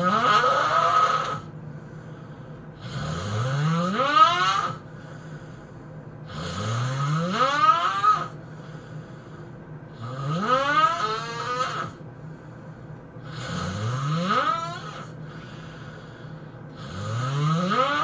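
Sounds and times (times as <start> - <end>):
person snoring heavily: 0.0 - 5.6, 6.2 - 12.0, 13.2 - 18.0
quiet breathing: 1.4 - 3.2, 4.8 - 6.6, 8.3 - 10.0, 11.9 - 13.7, 14.9 - 17.2.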